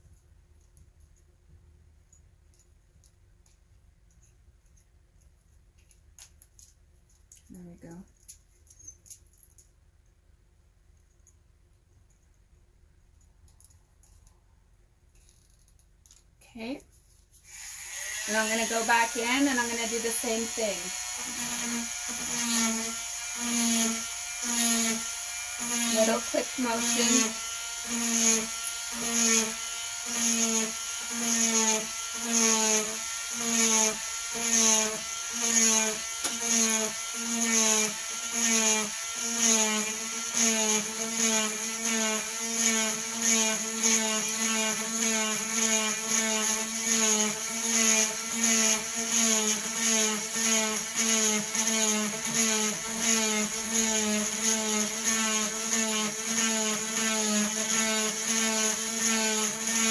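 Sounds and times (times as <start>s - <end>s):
rotary tool motor whining: 17.5s - 59.9s.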